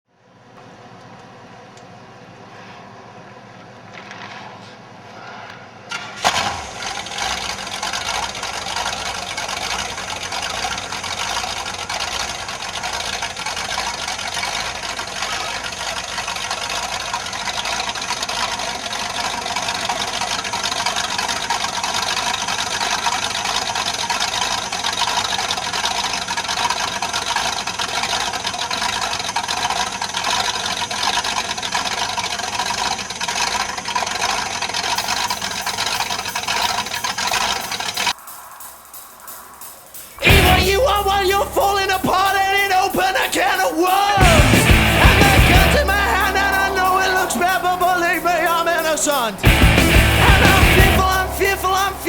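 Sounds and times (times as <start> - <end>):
jet boat engine: 6.2 - 38.2.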